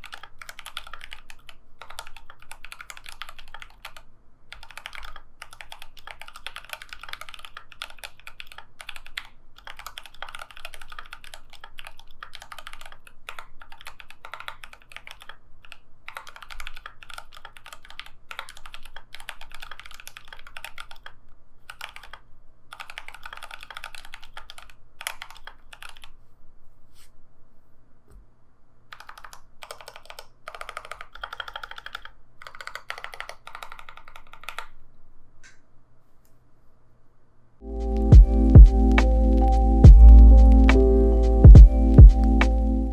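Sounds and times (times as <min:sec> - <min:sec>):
typing on mechanical keyboard: 0:00.0 - 0:26.1, 0:28.9 - 0:34.8.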